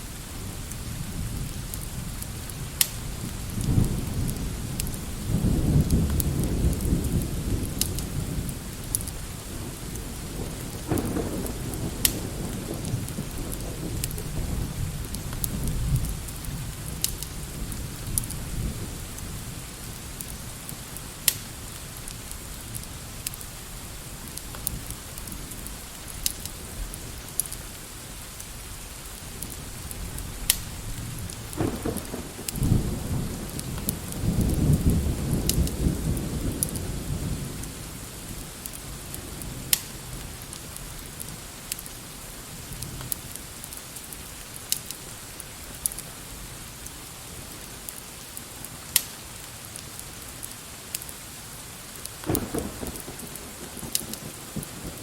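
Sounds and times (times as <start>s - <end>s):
steady rain: 0.0s - 55.0s
fireplace crackling and popping: 0.6s - 5.2s, 5.8s - 18.4s, 19.0s - 35.8s, 36.6s - 36.8s, 37.6s - 55.0s
rolling thunder: 0.6s - 20.0s, 29.6s - 40.8s, 52.2s - 55.0s.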